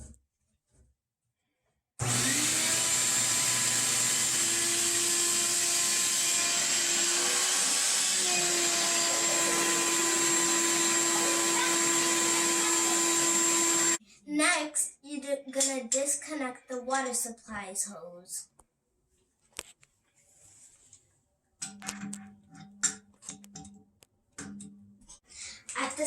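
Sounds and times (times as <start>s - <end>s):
vacuum cleaner sucking water: 2.0s - 14.0s.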